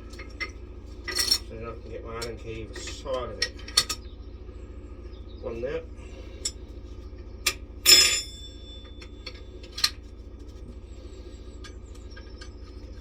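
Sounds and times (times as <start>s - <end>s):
metal tool parts clinking: 0.1s - 1.5s.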